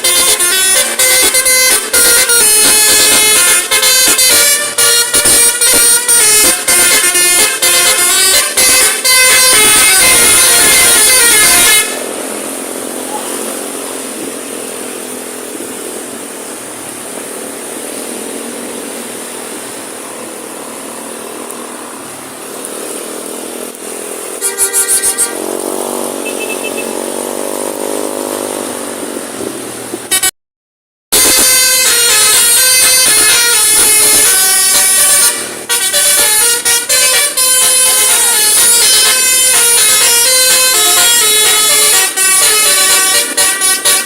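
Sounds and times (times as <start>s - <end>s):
short horn toots: 0.0s - 12.1s, 24.4s - 27.1s, 31.2s - 44.0s
multi-tone air horn tune: 0.0s - 13.8s, 24.3s - 27.2s, 30.1s - 30.3s, 31.1s - 44.0s
bus engine running: 0.0s - 30.3s, 31.2s - 44.0s.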